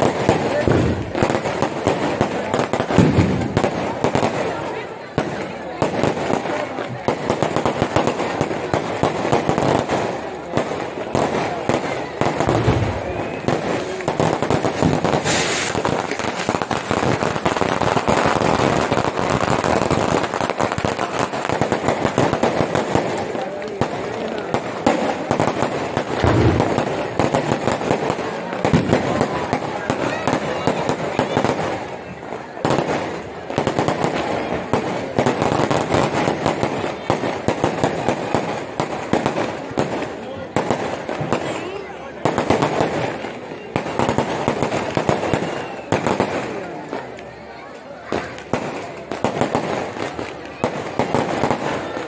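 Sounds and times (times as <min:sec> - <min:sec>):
fireworks crackling: 0:00.0 - 0:52.0
fireworks hiss: 0:07.2 - 0:46.6.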